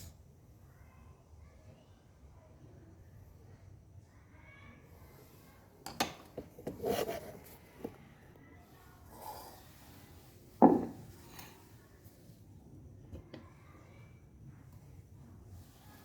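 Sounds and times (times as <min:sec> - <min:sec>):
short scrape on hard surface: 0:06.7 - 0:07.9.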